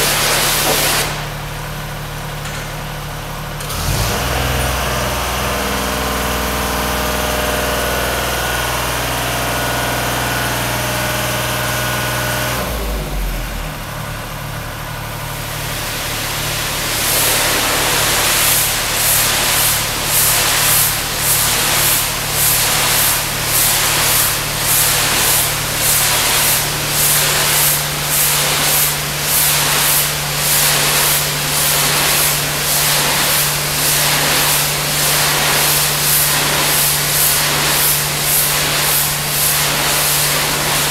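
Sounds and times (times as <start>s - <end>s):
high-pressure water spray hissing: 0.0s - 1.3s, 15.4s - 40.9s
pressure washer engine running: 0.0s - 40.9s.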